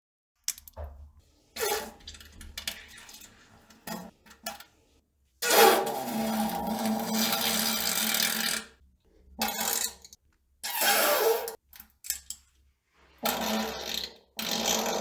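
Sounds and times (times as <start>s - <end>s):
farts: 5.5s - 8.6s, 13.2s - 15.0s.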